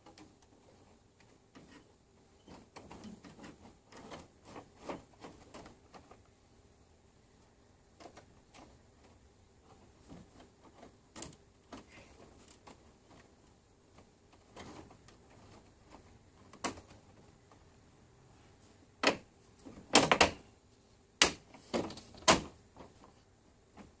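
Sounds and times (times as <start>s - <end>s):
clicks and knocks of objects handled: 0.0s - 6.4s, 8.0s - 17.7s, 21.2s - 24.0s.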